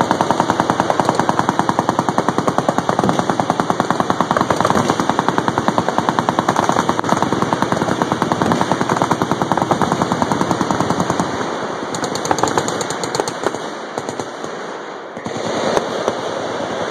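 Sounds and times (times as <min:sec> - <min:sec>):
machine guns firing bursts: 0:00.0 - 0:16.6.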